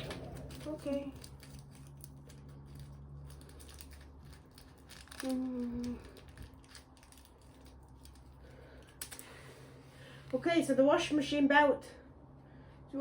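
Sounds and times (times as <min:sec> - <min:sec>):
low hum: 0:00.0 - 0:10.2.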